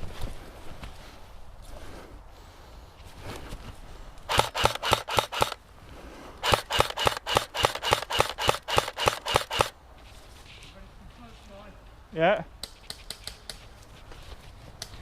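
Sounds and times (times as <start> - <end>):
airsoft rifle firing: 4.3 - 5.6, 6.4 - 9.8.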